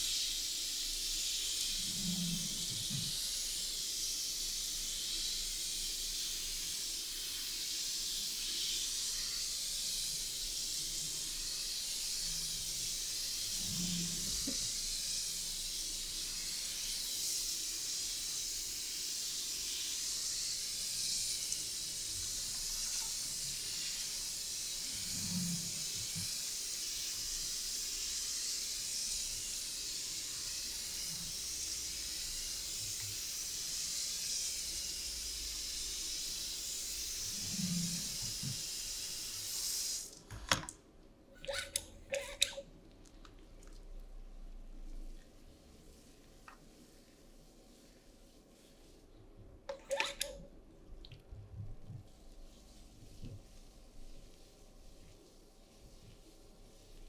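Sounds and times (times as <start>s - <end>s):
water spraying from shower head: 0.0s - 40.2s, 41.4s - 42.6s, 49.7s - 50.4s.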